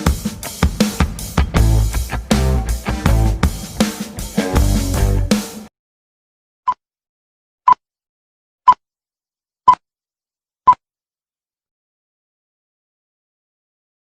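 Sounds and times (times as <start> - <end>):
guitar and drums music: 0.0 - 5.7.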